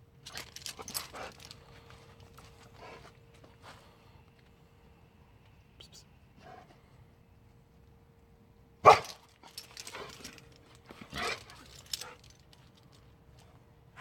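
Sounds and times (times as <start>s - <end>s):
dog barking: 8.8s - 9.2s.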